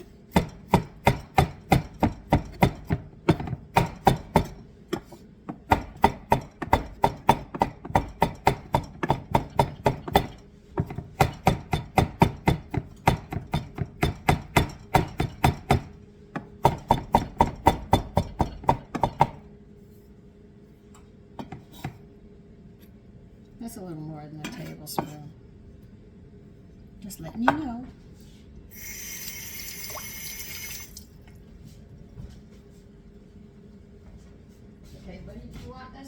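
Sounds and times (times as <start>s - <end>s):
knife chopping on cutting board: 0.3s - 19.4s.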